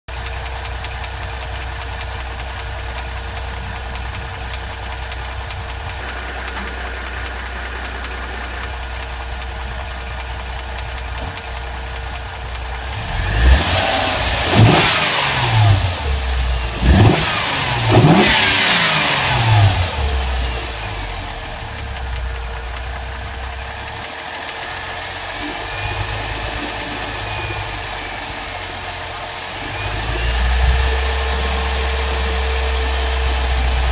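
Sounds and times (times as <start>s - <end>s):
car engine idling and revving: 0.1s - 33.9s.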